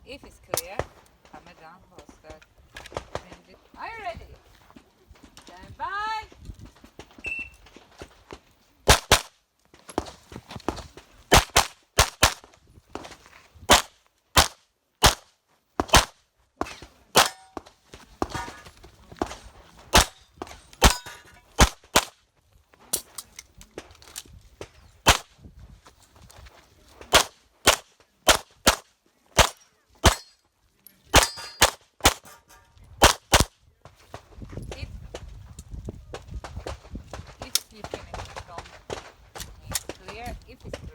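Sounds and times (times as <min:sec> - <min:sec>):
pistol shots: 0:08.9 - 0:09.3, 0:11.3 - 0:12.4, 0:13.7 - 0:17.6, 0:18.2 - 0:22.1, 0:25.0 - 0:25.3, 0:27.1 - 0:30.3, 0:31.1 - 0:32.4, 0:33.0 - 0:33.5.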